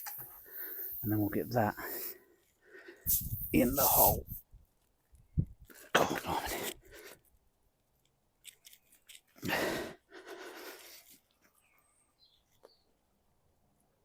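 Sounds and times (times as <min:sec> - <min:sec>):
man puffing heavy breaths: 0:00.1 - 0:01.0, 0:09.4 - 0:11.2.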